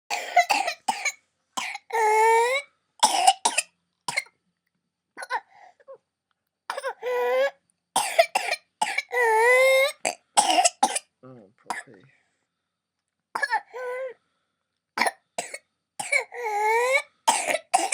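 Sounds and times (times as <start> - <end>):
toddler coughing rapidly: 0.1 - 4.3, 6.7 - 11.1, 13.4 - 13.9, 15.0 - 17.9.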